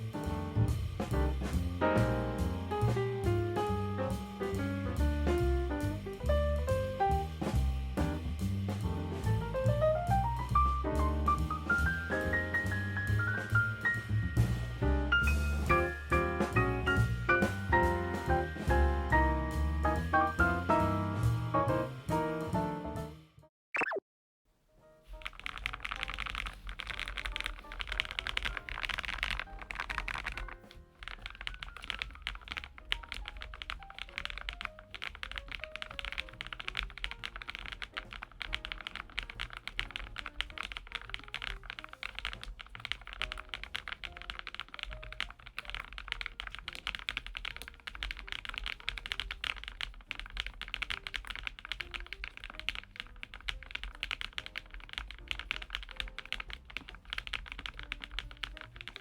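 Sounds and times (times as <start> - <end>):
faint background music: 24.8 - 59.0
mechanical keyboard typing: 25.1 - 59.0.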